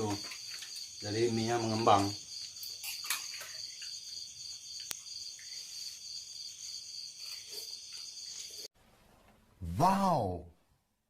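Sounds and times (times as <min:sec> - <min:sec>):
crickets chirring: 0:00.0 - 0:08.7.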